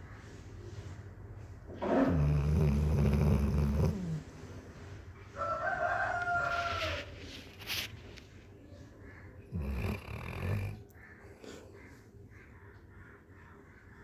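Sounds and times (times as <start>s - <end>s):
dog snoring: 1.8s - 4.4s, 9.5s - 10.8s.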